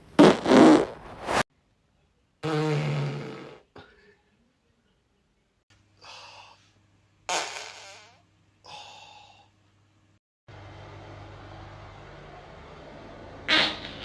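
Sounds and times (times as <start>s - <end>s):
short farts: 0.2s - 1.4s, 2.4s - 3.6s, 7.3s - 8.2s, 13.5s - 14.0s.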